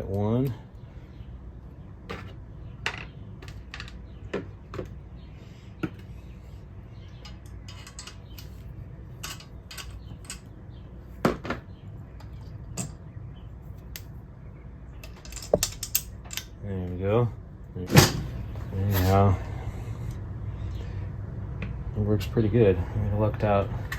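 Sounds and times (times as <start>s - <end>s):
steady low hum: 0.0s - 23.9s
small metal clicks and clinks: 7.1s - 8.6s, 9.2s - 10.5s, 15.0s - 16.5s
metal clanks: 15.0s - 16.4s.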